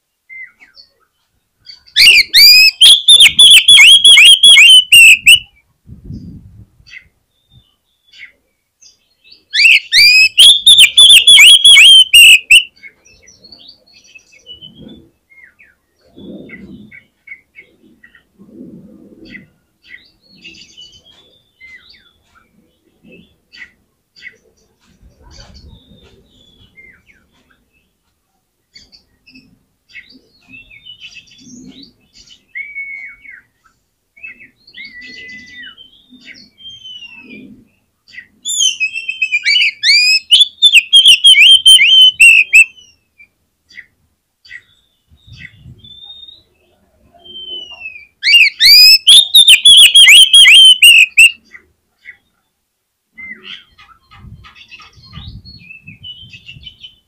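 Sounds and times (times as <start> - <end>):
bird whistling and chirping: 1.9 - 5.5, 9.5 - 12.7, 32.5 - 33.4, 34.2 - 37.4, 38.5 - 43.0, 44.8 - 46.5, 47.2 - 51.4
bird rapid repeated notes: 2.0 - 5.4, 9.6 - 12.7, 39.9 - 42.6, 48.4 - 51.4.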